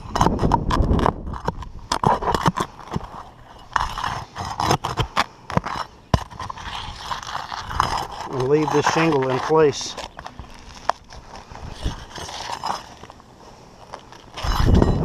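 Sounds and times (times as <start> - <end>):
nail bar scraping and clicking: 0.1 - 11.0.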